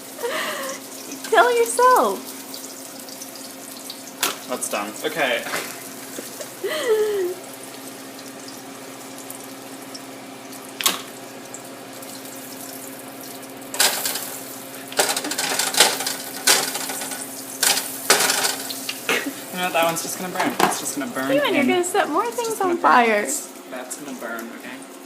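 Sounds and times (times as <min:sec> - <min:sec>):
pans and utensils clattering: 0:13.7 - 0:14.4, 0:15.0 - 0:21.2.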